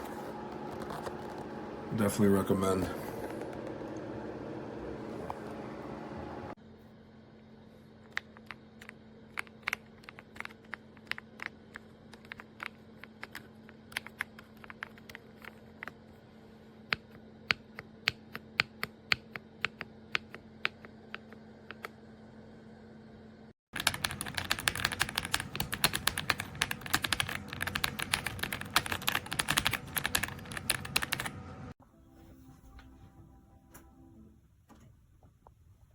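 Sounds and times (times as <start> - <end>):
faint steady hum: 0.0 - 35.9
typing on mechanical keyboard: 8.4 - 15.9, 23.8 - 31.3.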